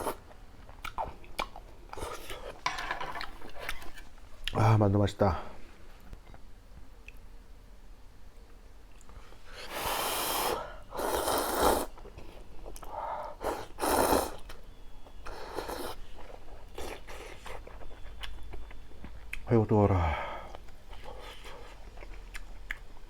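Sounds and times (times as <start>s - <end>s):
noodles being slurped: 9.7s - 12.0s, 13.4s - 14.5s.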